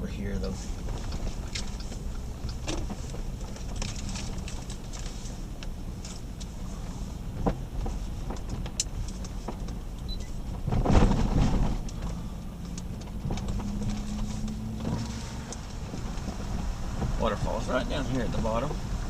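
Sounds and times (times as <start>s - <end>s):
car engine and road noise: 0.0s - 19.0s
clicks and rattles: 0.4s - 6.5s.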